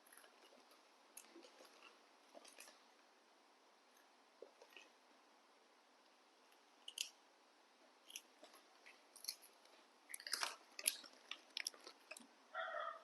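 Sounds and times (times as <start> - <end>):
crunchy snack chewing: 0.0 - 2.8, 8.0 - 12.3.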